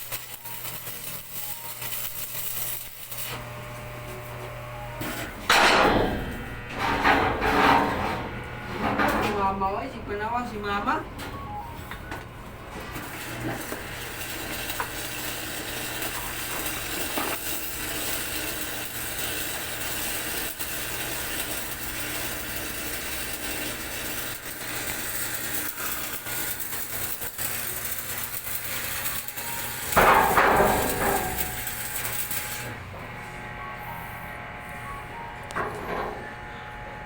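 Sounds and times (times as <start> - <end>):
welding arc crackling hiss: 0.0 - 8.2, 12.7 - 32.9.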